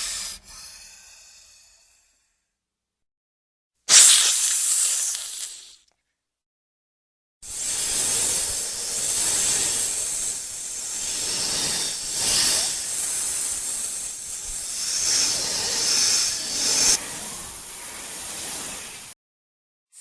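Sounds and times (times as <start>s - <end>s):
snake hissing: 3.9s - 5.8s, 7.4s - 19.2s.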